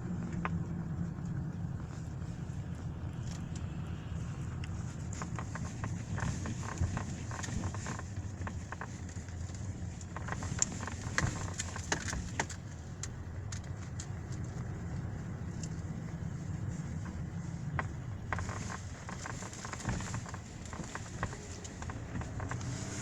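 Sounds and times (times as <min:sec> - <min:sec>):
low rumble of moving car: 0:00.0 - 0:23.0
dashboard panel rattling: 0:17.8 - 0:23.0.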